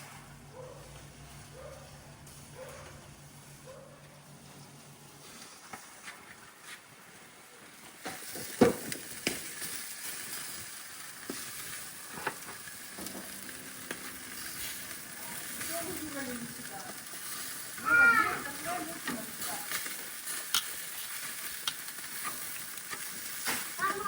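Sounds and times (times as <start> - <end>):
meat sizzling on a grill: 0.0 - 24.0
sharp pops and clicks: 20.4 - 20.8, 21.6 - 21.9.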